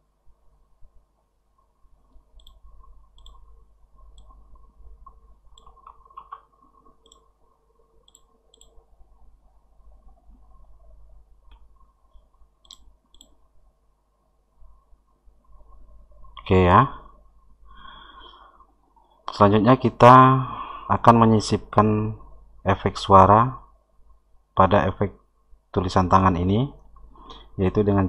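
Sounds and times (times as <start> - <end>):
faint low hum: 0.0 - 28.0
computer mouse clicking: 1.6 - 7.4, 8.0 - 8.9, 11.5 - 13.4.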